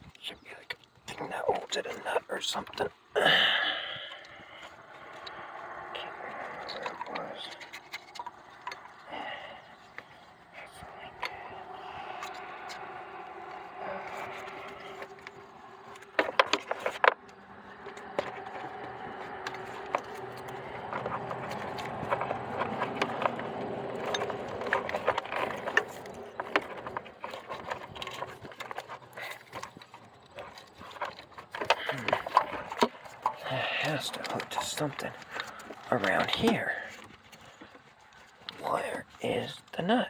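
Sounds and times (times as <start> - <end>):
clicks and knocks of handled parts: 11.1 - 38.6.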